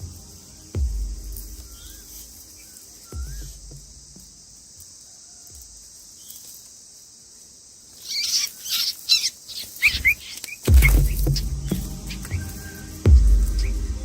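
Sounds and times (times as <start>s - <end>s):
music with deep bass: 0.0s - 4.4s, 10.7s - 14.0s
high insect buzz: 0.0s - 14.0s
small bird chirping rapidly: 7.9s - 13.8s.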